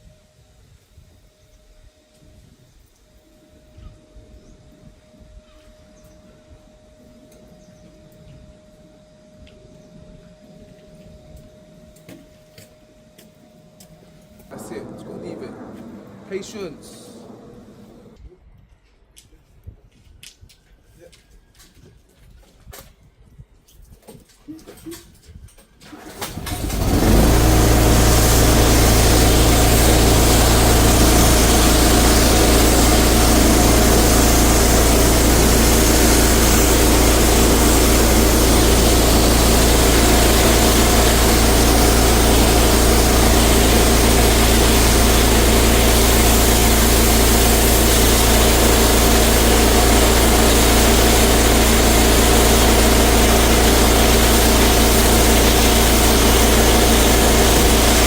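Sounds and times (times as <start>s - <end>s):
pressure washer engine running: 25.8s - 58.0s.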